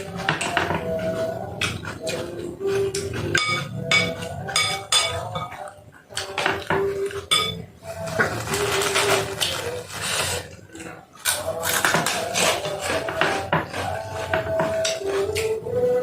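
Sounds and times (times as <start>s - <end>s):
spoon clinking against bowl: 2.9s - 7.7s.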